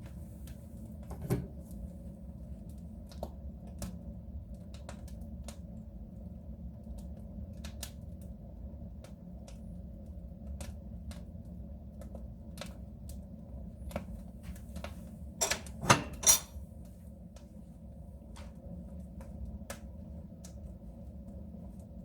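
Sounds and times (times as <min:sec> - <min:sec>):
flames rushing in a stove: 0:00.0 - 0:22.0
fire crackling and popping: 0:18.4 - 0:22.0.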